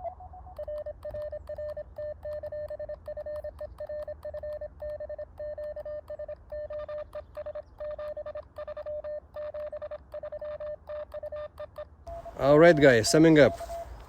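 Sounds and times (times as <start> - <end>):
morse code beeps: 0.0 - 14.0
low hum: 12.1 - 14.0.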